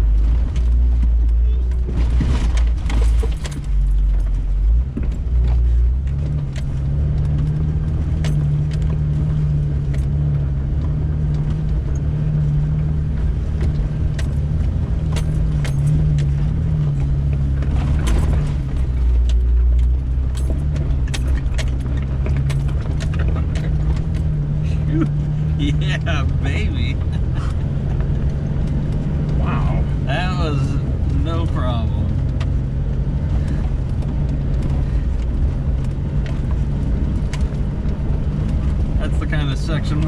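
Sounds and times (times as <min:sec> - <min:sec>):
off-road vehicle engine rumbling: 0:00.0 - 0:40.0
clicks and knocks from rocks: 0:13.5 - 0:24.4.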